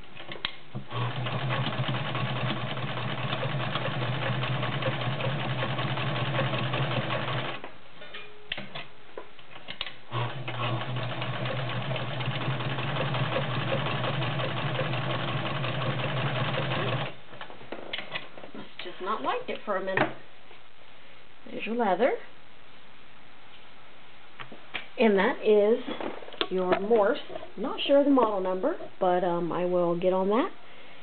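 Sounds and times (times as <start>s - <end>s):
sewing machine stitching: 0.9s - 7.6s, 10.1s - 17.2s.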